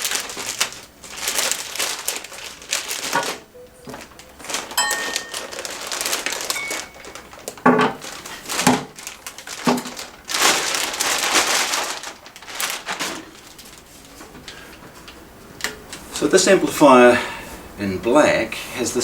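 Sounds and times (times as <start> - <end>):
plastic bag crinkling: 0.0 - 14.2.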